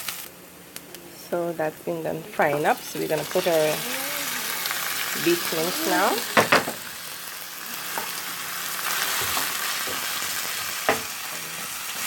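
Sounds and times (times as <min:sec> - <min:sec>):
meat sizzling in hot oil: 0:00.0 - 0:00.3, 0:02.7 - 0:12.0
loud knocks: 0:06.4 - 0:06.9.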